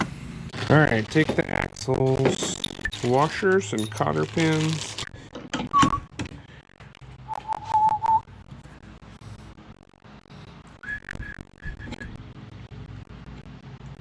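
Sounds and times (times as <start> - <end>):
small metal parts clattering: 2.0 - 5.7
person whistling: 7.3 - 8.2, 10.8 - 12.1.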